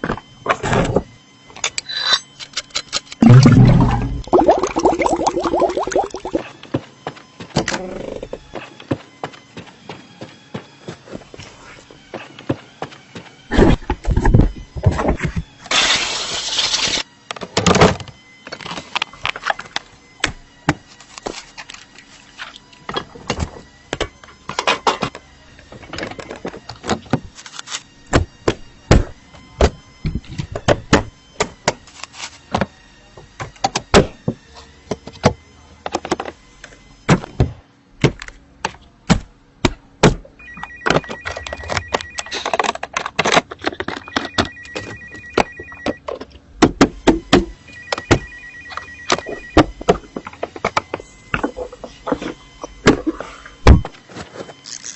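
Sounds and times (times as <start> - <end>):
clicks and knocks of tools: 1.6 - 3.2.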